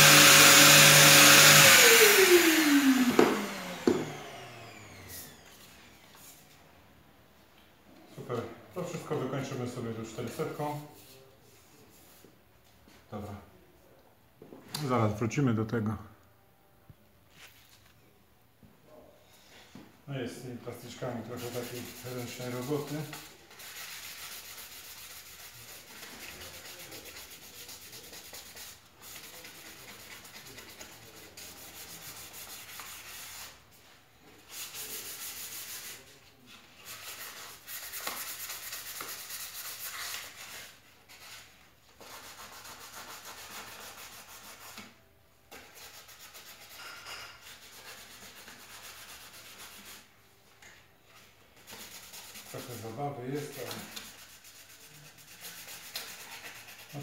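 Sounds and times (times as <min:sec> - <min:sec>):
sandpaper rasping on plastic: 0:20.9 - 0:33.8, 0:34.4 - 0:50.1, 0:51.6 - 0:57.0.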